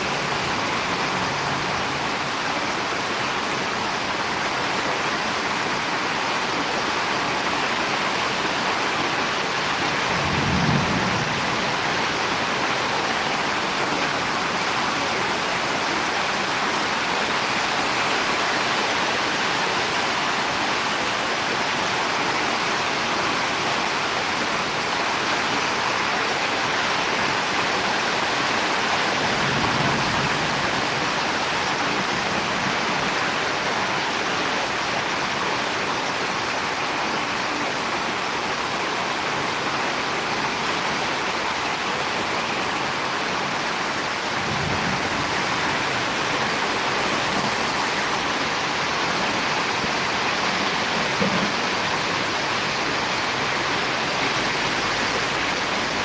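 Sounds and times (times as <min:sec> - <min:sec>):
rain rushing: 0:00.0 - 0:56.0
low thunder rumble: 0:09.9 - 0:12.9, 0:29.1 - 0:33.5, 0:44.1 - 0:48.0.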